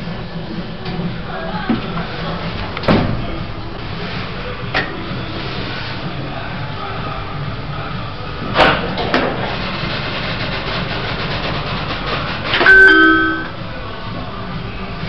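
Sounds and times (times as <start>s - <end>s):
lift hum: 11.6s - 14.3s
electronic lift chime: 12.6s - 13.6s.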